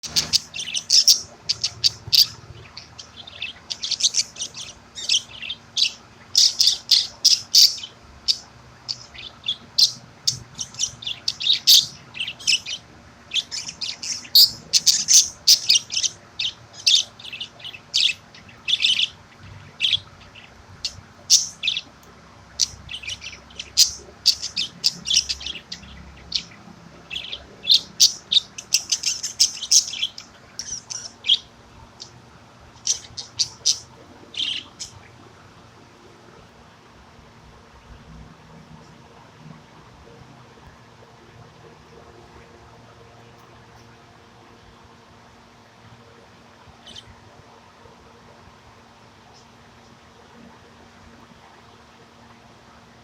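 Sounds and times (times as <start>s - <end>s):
budgerigar chirping: 0.0s - 21.9s, 22.6s - 32.1s, 32.8s - 35.0s.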